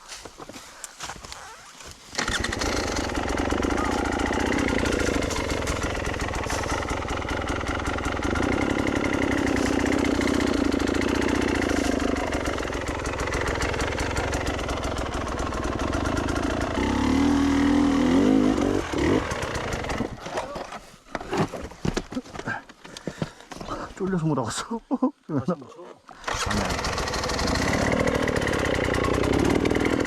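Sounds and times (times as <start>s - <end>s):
dirt bike engine revving: 2.1s - 20.2s, 26.2s - 30.0s.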